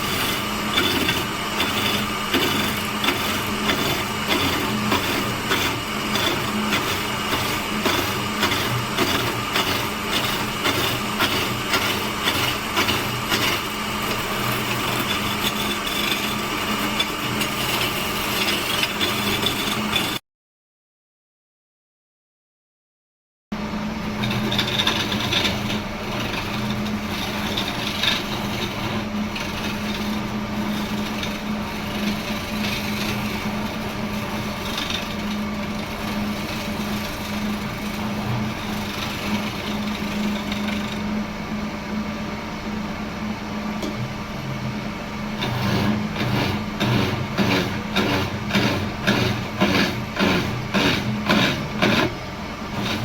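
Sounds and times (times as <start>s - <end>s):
woodworking machine motor hum: 0.0s - 20.2s, 23.6s - 53.0s
rhythmic scraping or knocking: 45.4s - 52.1s, 52.7s - 53.0s.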